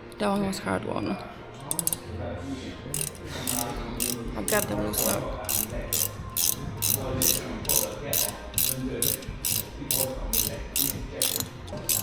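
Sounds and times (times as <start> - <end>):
ratchet wrench clicking: 1.6 - 2.0, 2.9 - 12.0.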